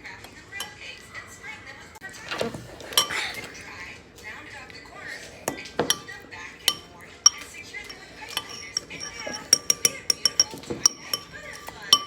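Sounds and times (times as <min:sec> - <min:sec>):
cutlery clinking against dish: 0:02.3 - 0:03.6, 0:05.4 - 0:12.0.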